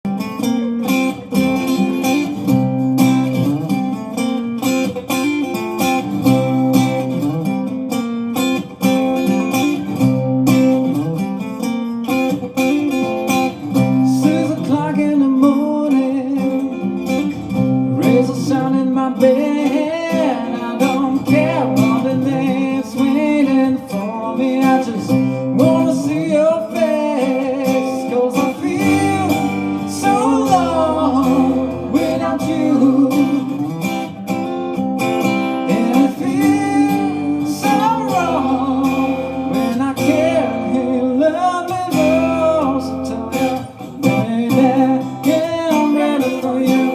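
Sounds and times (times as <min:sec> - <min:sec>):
strummed guitar: 0:00.0 - 0:46.9
person singing: 0:13.8 - 0:17.1, 0:17.8 - 0:34.2, 0:35.5 - 0:46.9.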